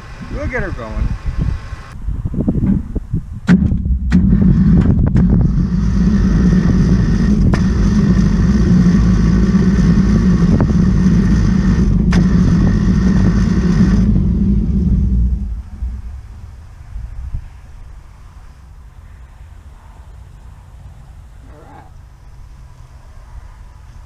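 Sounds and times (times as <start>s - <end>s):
sawmill engine running: 3.5s - 17.4s.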